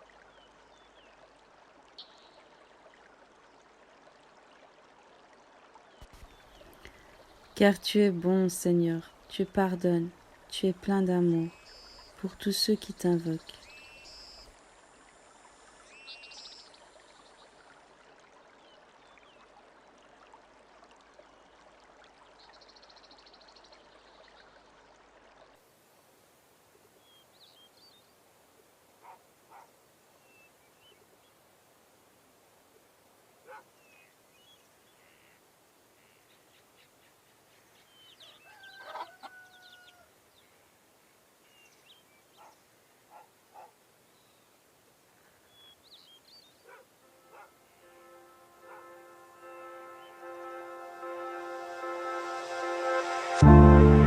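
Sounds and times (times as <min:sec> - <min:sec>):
running water hiss: 0:06.0 - 0:20.2
distant bird calls: 0:29.0 - 0:31.0, 0:33.4 - 0:35.4, 0:41.4 - 0:44.5, 0:45.3 - 0:52.4.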